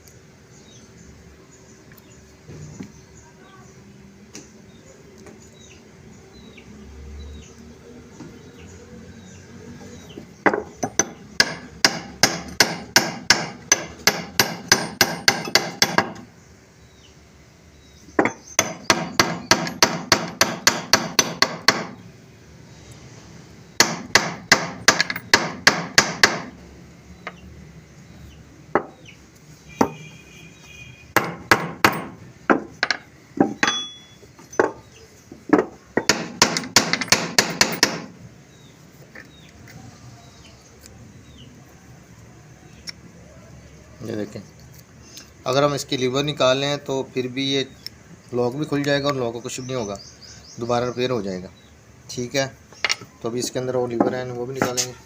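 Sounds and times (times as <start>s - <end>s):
hammer striking brass lock: 29.8s - 30.1s, 31.2s - 34.7s, 36.1s - 38.1s.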